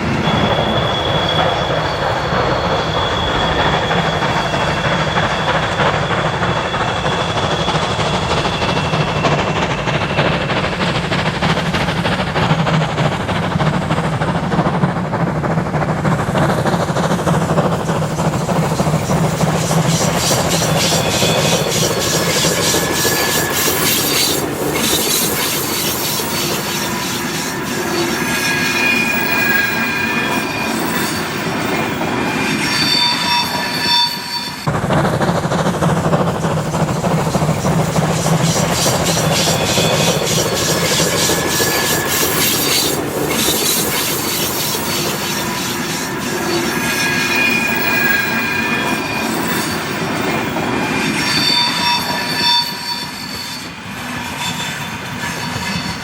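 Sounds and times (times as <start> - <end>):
steel wheels squealing: 0.0 - 34.7, 35.3 - 56.0
train rolling on rails: 0.0 - 56.0.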